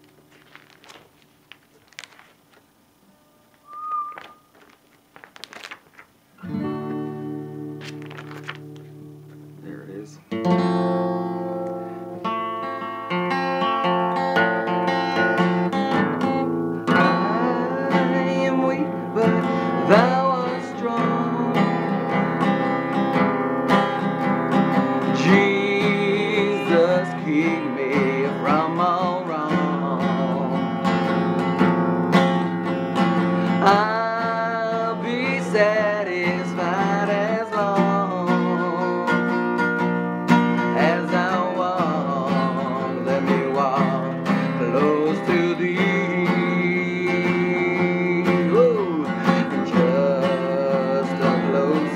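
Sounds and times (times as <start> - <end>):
acoustic guitar playing: 0.0 - 51.9.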